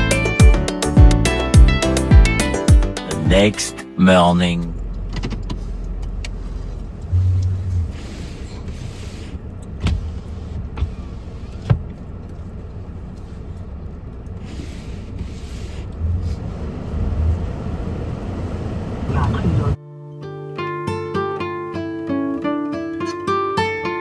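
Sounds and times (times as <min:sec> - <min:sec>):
car road noise rumble: 0:03.3 - 0:19.8
hiss: 0:07.9 - 0:09.4, 0:14.4 - 0:17.1.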